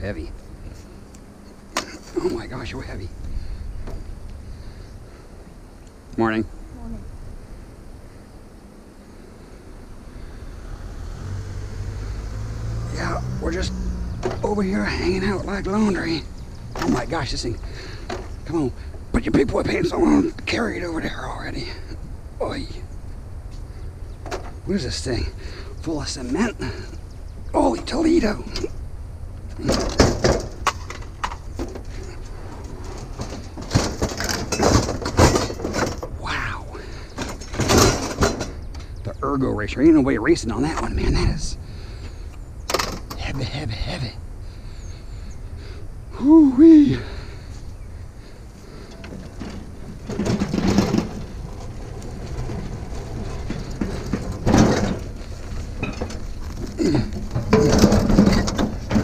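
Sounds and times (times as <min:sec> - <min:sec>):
metal scrap clanking and scraping: 0:29.6 - 0:36.1, 0:36.9 - 0:38.9, 0:48.7 - 0:59.0.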